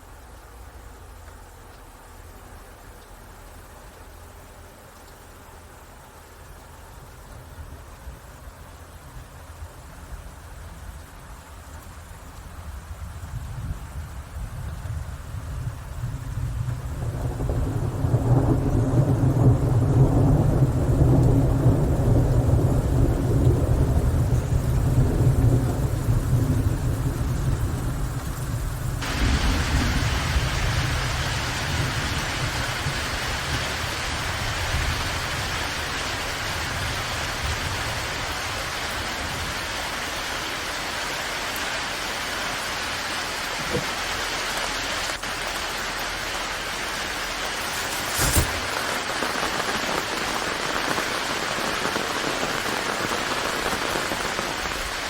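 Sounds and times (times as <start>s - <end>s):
heavy rain hissing: 0.0s - 55.0s
rolling thunder: 14.6s - 39.6s.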